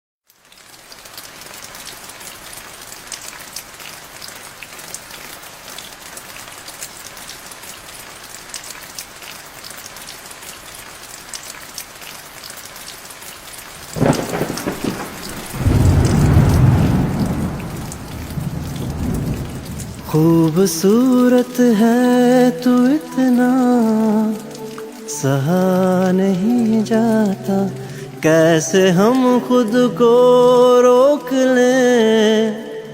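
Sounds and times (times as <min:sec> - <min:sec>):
steady rain falling: 0:00.2 - 0:32.9
low roll of thunder: 0:13.8 - 0:20.6.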